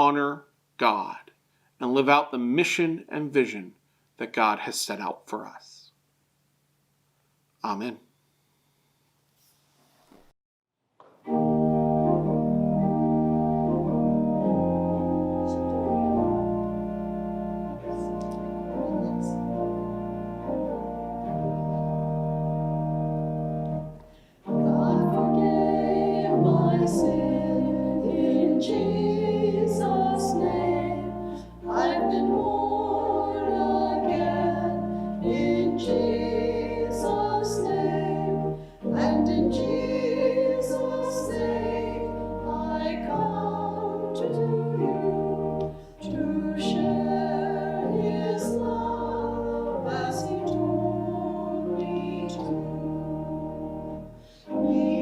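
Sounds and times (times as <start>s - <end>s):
keyboard chords: 11.2s - 55.0s
choir singing a hymn: 11.3s - 55.0s.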